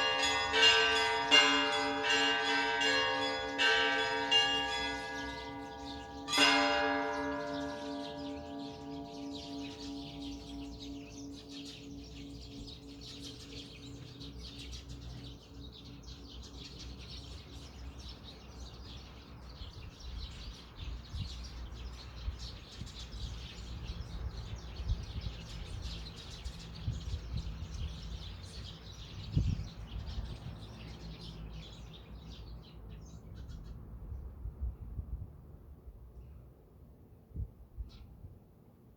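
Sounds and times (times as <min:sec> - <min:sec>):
church bell hum: 0:00.0 - 0:19.0
small birds chirping: 0:07.0 - 0:34.3.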